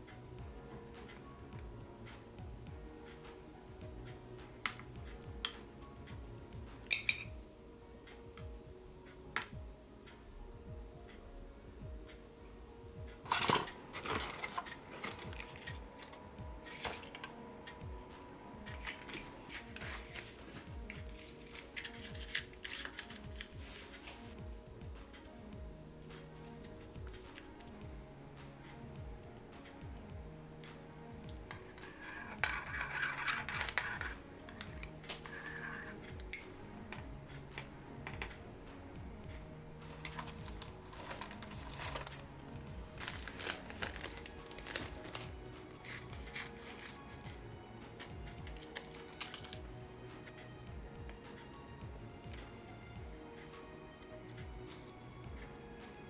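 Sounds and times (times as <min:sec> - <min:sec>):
faint background music: 0:00.0 - 0:56.0
clinks of small hard objects: 0:06.9 - 0:07.3, 0:31.5 - 0:36.5
objects handled with clicks: 0:06.9 - 0:07.3, 0:13.3 - 0:17.4, 0:18.7 - 0:24.3, 0:31.5 - 0:37.0, 0:39.8 - 0:47.4, 0:48.0 - 0:49.7.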